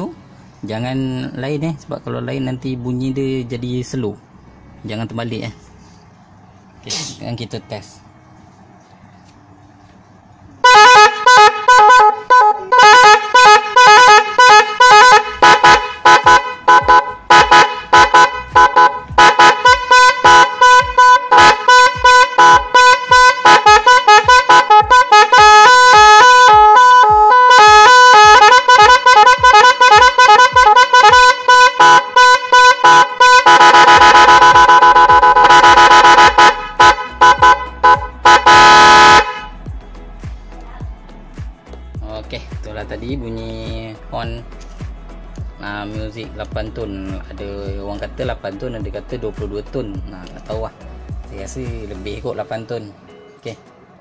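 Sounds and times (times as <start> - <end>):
musical car horn playing tune: 10.6 - 39.7.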